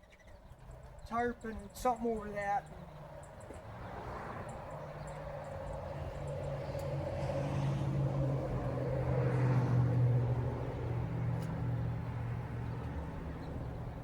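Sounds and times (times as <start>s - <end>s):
vehicle engine passing by: 2.6s - 14.0s.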